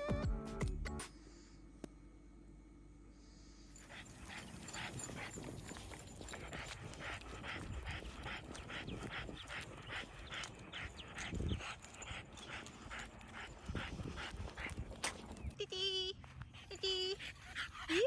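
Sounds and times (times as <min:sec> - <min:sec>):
dog panting: 0:03.8 - 0:15.6, 0:16.4 - 0:18.0.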